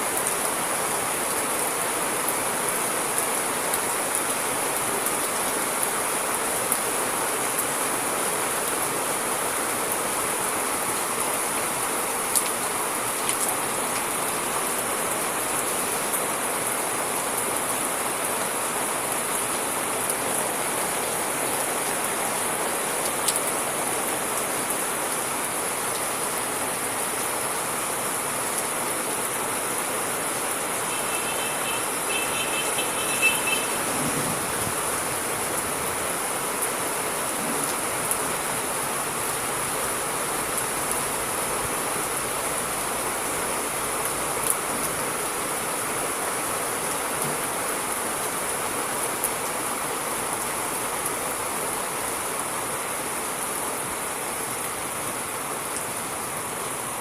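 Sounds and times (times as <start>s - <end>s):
steady rain falling: 0.0s - 57.0s
sharp raindrop ticks: 12.3s - 12.6s, 13.2s - 14.4s, 23.0s - 23.6s.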